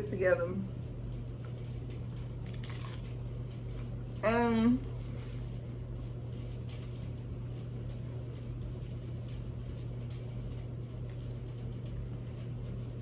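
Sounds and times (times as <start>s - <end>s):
steady low hum: 0.0s - 13.0s
quiet chewing: 1.2s - 4.0s.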